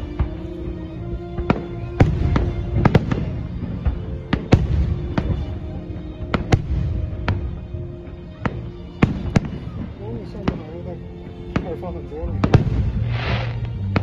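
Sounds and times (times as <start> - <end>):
music: 0.0 - 14.0
fireworks bangs: 1.4 - 10.8, 11.5 - 14.0.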